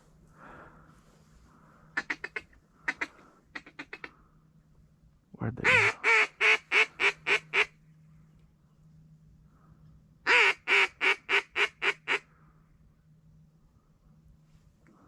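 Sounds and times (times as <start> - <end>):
duck call quacks: 2.0 - 4.1, 5.6 - 7.7, 10.3 - 12.2.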